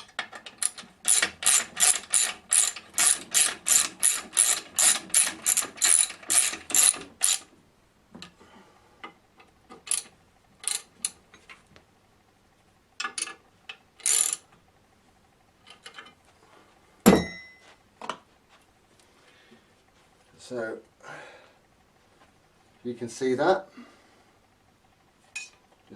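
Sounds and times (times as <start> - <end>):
ratchet wrench clicking: 0.6 - 7.4, 14.0 - 14.4
metallic clank with ringing: 17.1 - 17.6.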